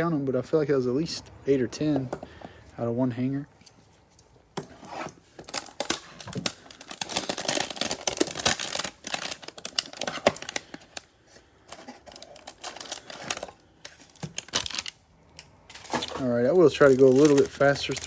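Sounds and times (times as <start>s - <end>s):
cards flipping clicks and rustles: 3.6s - 18.0s.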